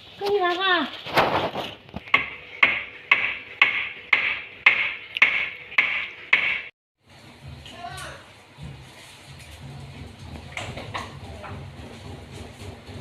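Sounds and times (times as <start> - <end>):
hammer striking: 2.0 - 6.7.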